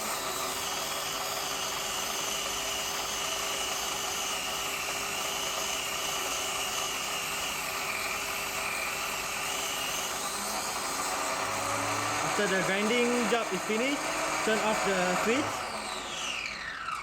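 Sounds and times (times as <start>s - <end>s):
grinder high whine: 0.0s - 17.0s.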